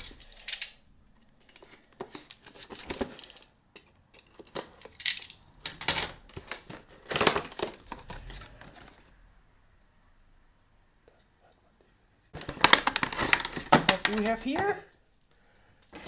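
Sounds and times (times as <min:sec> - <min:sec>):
packaging clicks and rustles: 0:00.0 - 0:09.1, 0:12.4 - 0:14.9.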